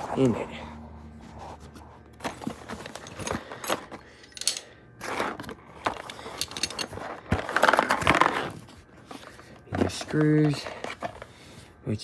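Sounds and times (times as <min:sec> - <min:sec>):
small metal parts clinking: 0:02.2 - 0:08.6.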